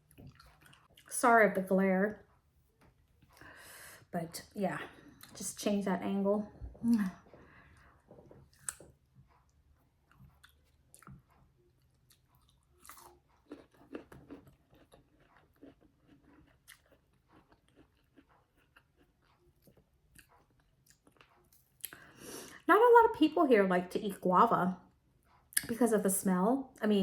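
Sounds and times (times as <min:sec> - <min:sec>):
chewing crunchy fruit: 0:00.0 - 0:01.2, 0:06.5 - 0:22.2.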